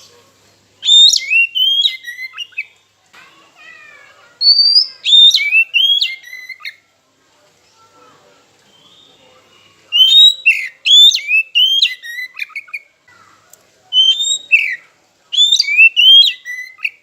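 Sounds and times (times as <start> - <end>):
bird singing whistled phrases: 0.8 - 2.7, 4.4 - 6.8, 8.7 - 12.8, 13.9 - 17.0.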